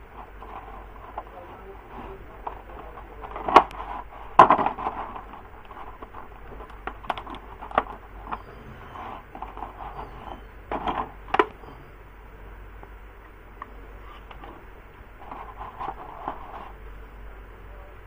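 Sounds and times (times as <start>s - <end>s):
soft rustling: 0.0s - 11.9s, 13.9s - 17.1s
handling clicks and knocks: 2.4s - 8.6s, 9.2s - 11.8s.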